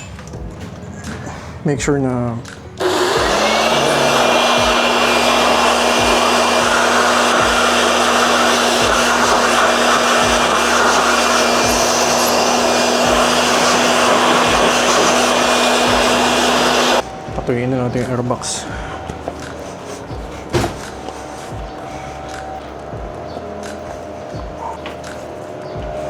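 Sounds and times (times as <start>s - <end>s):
electric blower running: 2.8s - 17.2s.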